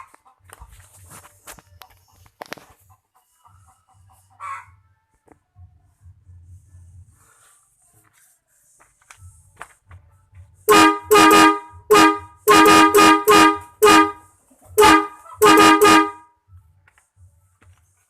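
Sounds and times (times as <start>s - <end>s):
bus horn blasts: 10.7s - 16.3s.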